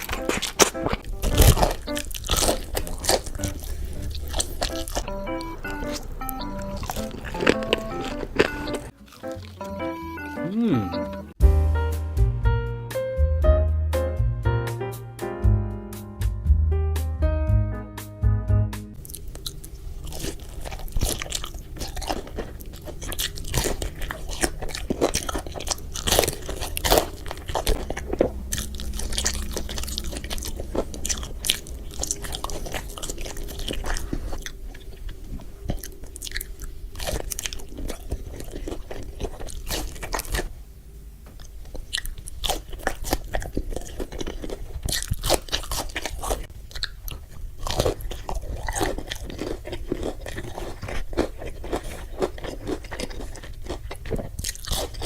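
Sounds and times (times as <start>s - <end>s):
chewing crispy food: 0.0s - 11.4s, 19.0s - 55.0s
low hum: 19.0s - 39.2s.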